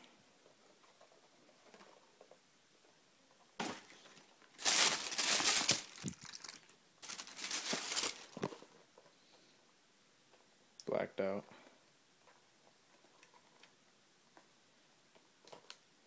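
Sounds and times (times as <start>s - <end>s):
packaging crinkling and rustling: 3.6s - 8.7s.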